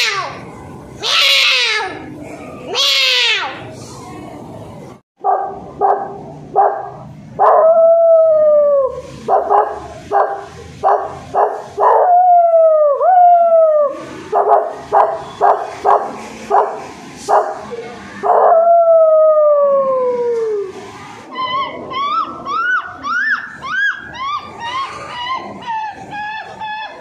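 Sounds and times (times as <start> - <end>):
child howling: 0.0 - 0.4, 21.3 - 27.0.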